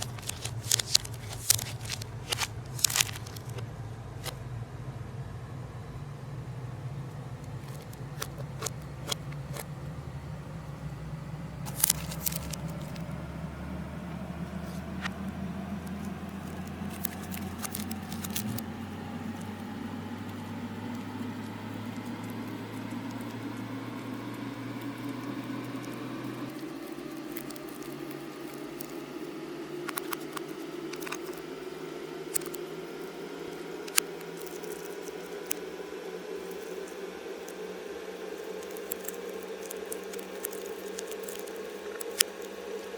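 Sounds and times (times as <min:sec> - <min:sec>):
slime squishing by hand: 0:00.0 - 0:03.6, 0:11.6 - 0:13.1, 0:14.5 - 0:20.3, 0:21.0 - 0:29.2, 0:38.4 - 0:42.9
small objects clicking: 0:00.0 - 0:03.6, 0:11.7 - 0:13.1, 0:15.9 - 0:18.6, 0:26.5 - 0:29.0, 0:38.4 - 0:42.5
steady low hum: 0:00.0 - 0:42.9.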